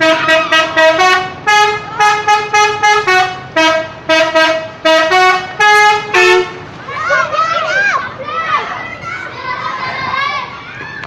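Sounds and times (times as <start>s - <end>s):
multi-tone musical horn tune: 0.0s - 6.6s.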